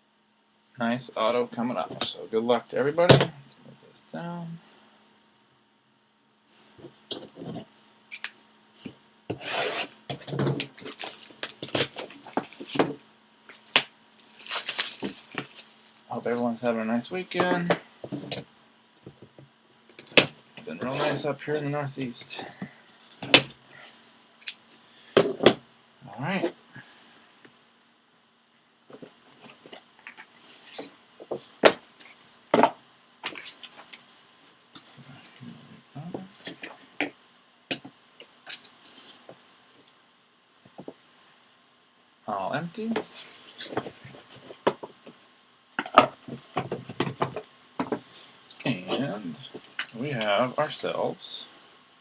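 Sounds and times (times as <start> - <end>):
packaging rubbing and scraping: 9.3 - 10.0, 10.6 - 16.6.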